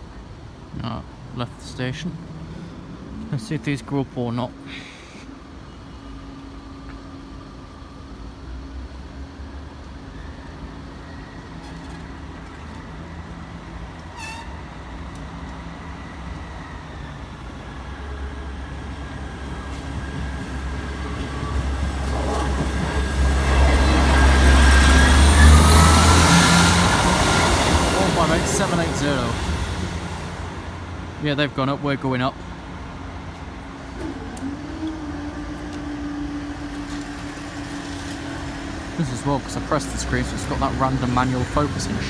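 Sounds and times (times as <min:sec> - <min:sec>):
diesel train engine rumble: 0:00.0 - 0:42.0
high squeal: 0:21.4 - 0:30.0.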